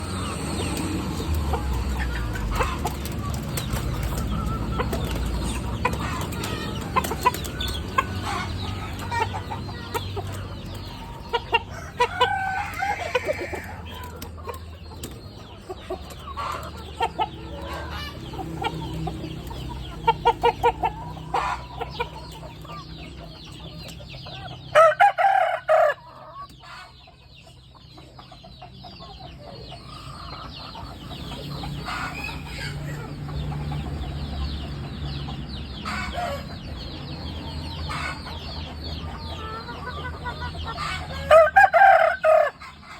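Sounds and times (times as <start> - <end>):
chickens clucking: 0.0 - 42.9.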